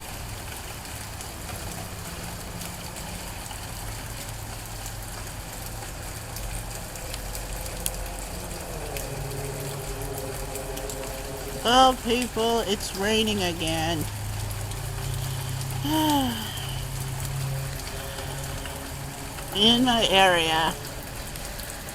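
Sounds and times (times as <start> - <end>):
rain drops ticking: 0.0 - 21.9
low hum: 6.6 - 21.9.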